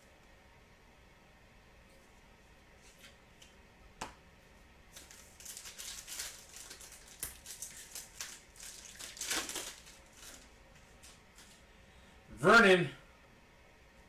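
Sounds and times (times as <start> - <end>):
trading cards rustling and clicking: 4.9 - 11.6.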